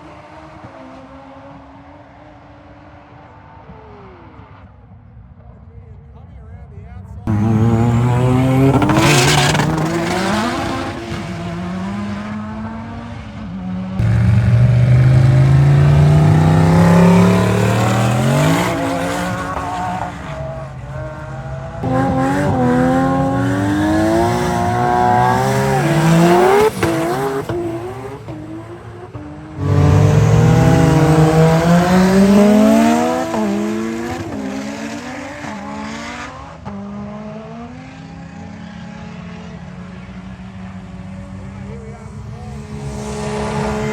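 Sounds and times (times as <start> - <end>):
race car engines accelerating: 7.1 - 43.9.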